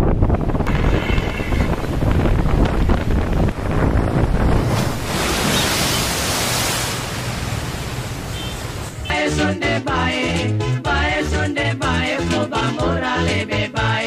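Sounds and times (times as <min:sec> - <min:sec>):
rough sea: 0:00.0 - 0:09.1
wind buffeting microphone: 0:00.0 - 0:09.1.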